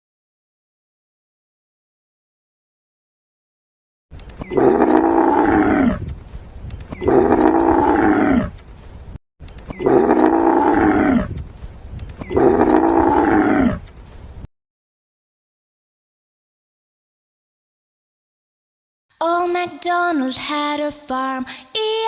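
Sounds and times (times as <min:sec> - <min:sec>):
cow mooing: 0:04.5 - 0:06.1, 0:07.0 - 0:08.6, 0:09.8 - 0:11.3, 0:12.3 - 0:13.8.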